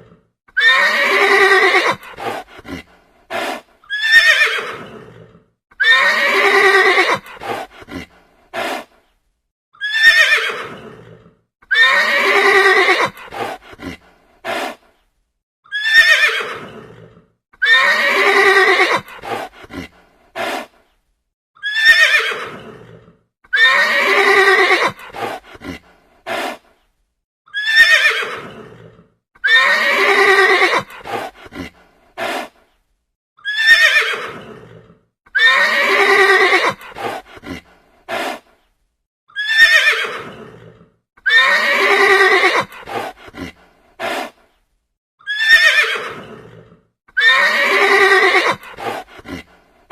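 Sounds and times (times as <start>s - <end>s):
horse whinnying: 0.5s - 8.9s, 9.8s - 13.6s, 15.6s - 19.9s, 21.6s - 25.8s, 27.5s - 31.6s, 33.4s - 37.6s, 39.3s - 44.3s, 45.2s - 49.5s.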